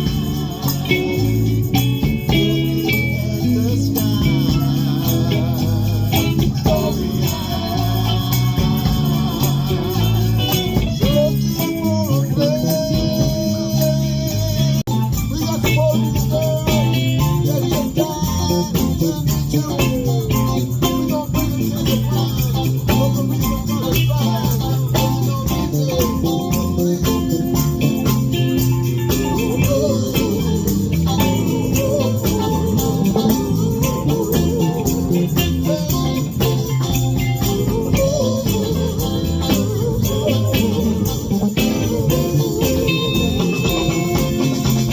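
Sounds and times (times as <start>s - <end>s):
bass line: 0.0s - 44.9s
electric guitar: 0.0s - 44.9s
jingling tambourine: 0.0s - 44.9s.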